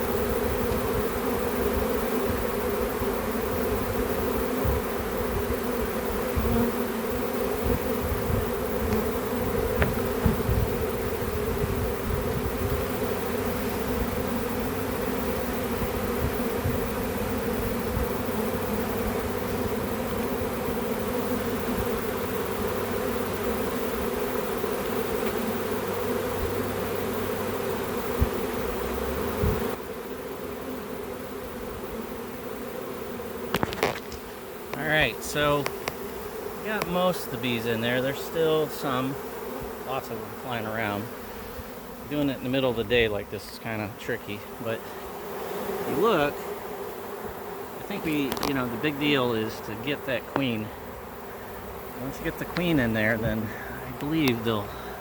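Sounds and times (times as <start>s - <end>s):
bees buzzing: 0.0s - 55.0s
low bumps: 7.6s - 12.8s.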